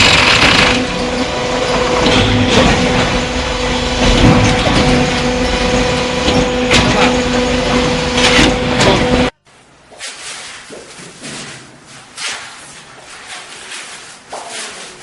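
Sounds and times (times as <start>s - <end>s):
concrete pump drone: 0.0s - 9.4s.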